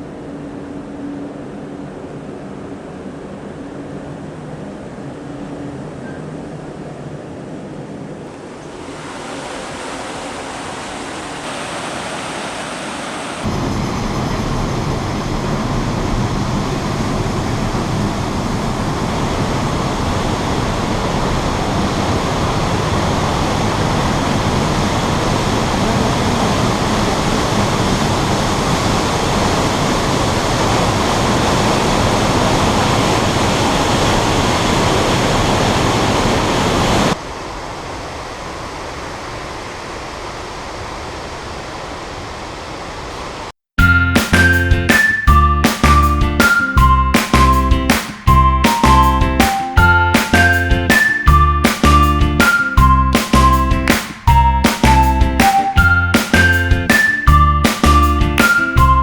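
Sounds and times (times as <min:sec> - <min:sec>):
waterfall rushing: 0:08.3 - 0:13.5.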